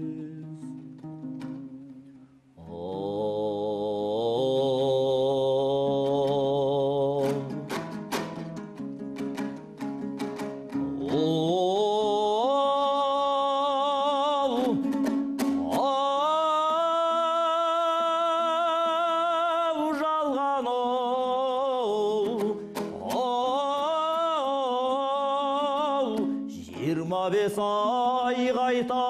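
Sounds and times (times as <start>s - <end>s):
person singing with wide vibrato: 0.0s - 29.0s
instrumental accompaniment: 0.1s - 2.5s, 7.3s - 11.6s.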